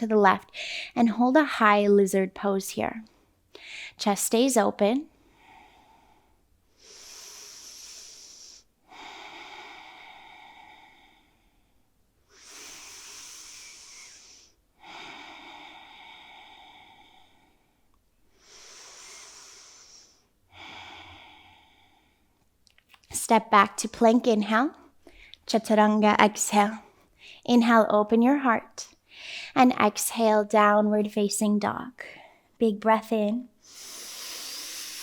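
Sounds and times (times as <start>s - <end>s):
woman breathing deeply: 3.2s - 4.0s, 5.2s - 22.4s, 29.1s - 29.6s, 33.6s - 35.0s.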